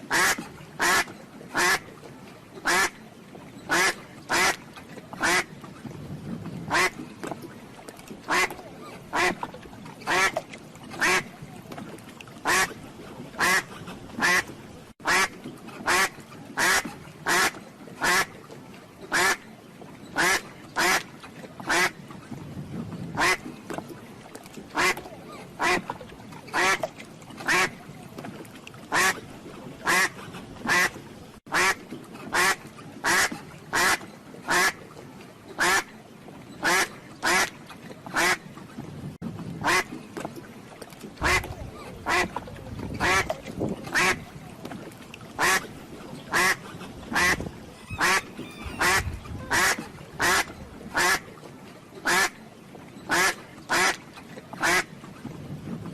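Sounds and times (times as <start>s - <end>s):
duck quacking: 0.1s - 1.8s, 12.5s - 12.7s, 13.4s - 15.3s, 43.9s - 44.2s, 46.3s - 51.2s.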